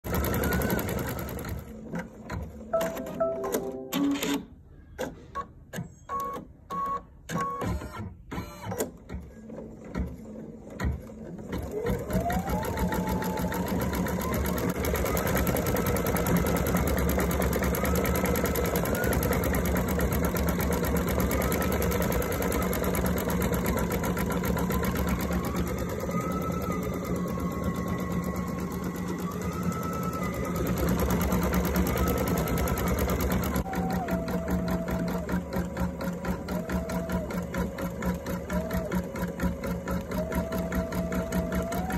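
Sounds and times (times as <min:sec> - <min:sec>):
electric sewing machine running: 0:00.0 - 0:02.5, 0:11.5 - 0:41.9.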